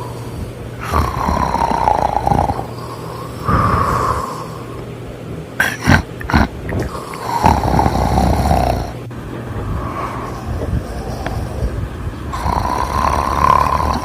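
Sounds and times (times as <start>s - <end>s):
person snoring: 0.0s - 4.8s, 5.6s - 9.0s, 9.7s - 14.0s
sharp snorts: 0.0s - 4.8s, 5.6s - 9.0s, 10.0s - 14.0s.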